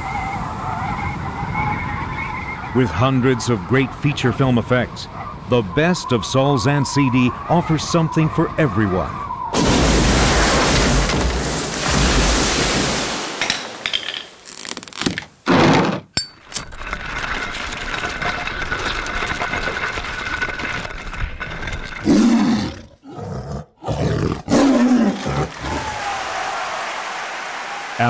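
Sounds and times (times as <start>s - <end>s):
roar-like calls: 22.0s - 27.0s.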